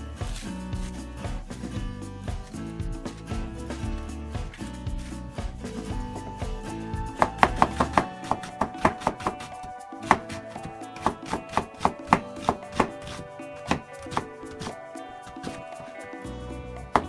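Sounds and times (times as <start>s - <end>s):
background music: 0.0s - 17.0s
knife chopping on cutting board: 7.2s - 14.7s.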